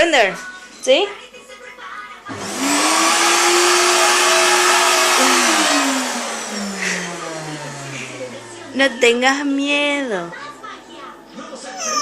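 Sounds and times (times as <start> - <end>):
vacuum motor winding down: 2.3 - 9.3
vacuum cleaner whining: 2.3 - 9.8.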